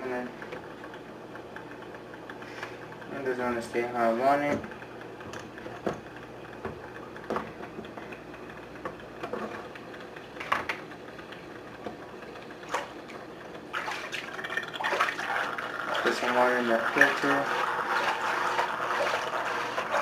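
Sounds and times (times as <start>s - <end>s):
aquarium equipment clicks and knocks: 4.4s - 13.7s.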